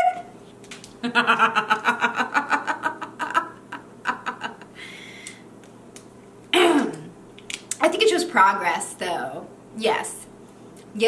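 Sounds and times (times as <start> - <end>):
woman giggling: 1.0 - 4.8.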